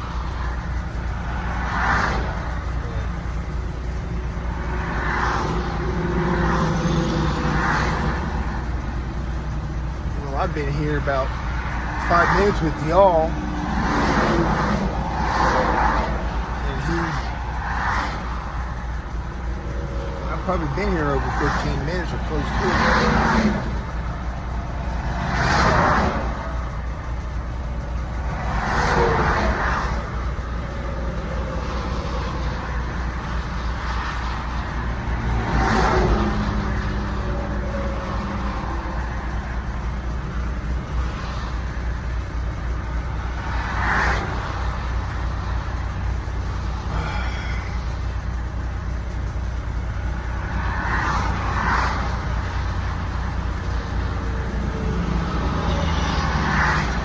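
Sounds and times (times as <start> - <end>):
diesel truck engine idling: 0.0 - 57.0
passing traffic whoosh: 0.0 - 57.0.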